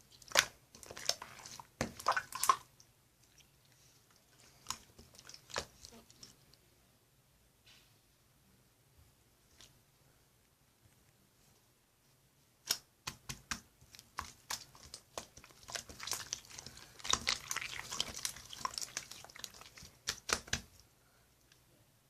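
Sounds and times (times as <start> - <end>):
crinkling and tearing: 13.9 - 20.6.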